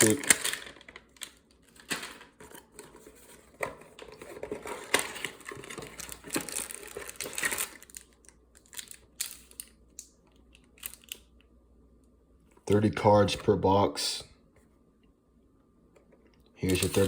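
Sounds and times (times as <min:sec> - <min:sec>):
plastic packaging crinkling and cracking: 0:00.0 - 0:03.0, 0:03.9 - 0:11.4, 0:16.6 - 0:17.0.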